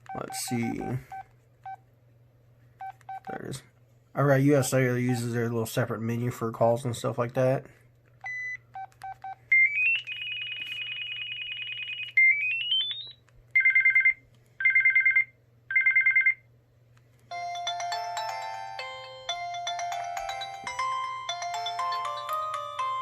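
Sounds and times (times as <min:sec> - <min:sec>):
polyphonic ringtone tune: 0:09.6 - 0:13.1, 0:17.3 - 0:23.0
phone key beeps: 0:12.0 - 0:16.4.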